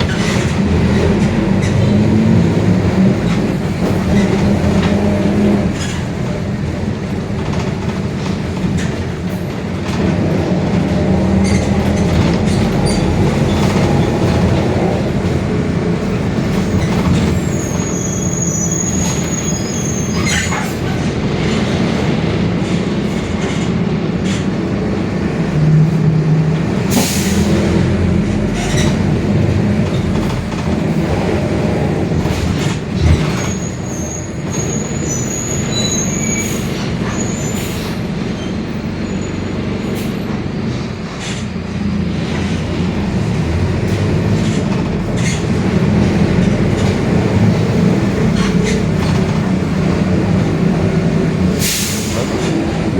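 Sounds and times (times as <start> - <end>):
bus engine rumbling: 0.0 - 52.9
high squeals: 16.5 - 20.9, 33.2 - 39.9.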